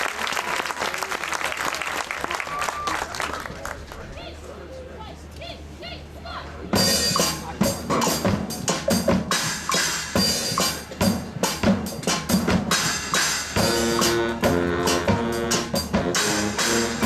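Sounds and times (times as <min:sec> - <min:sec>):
marching band drums: 0:06.8 - 0:17.0
horns holding chords: 0:13.6 - 0:17.0.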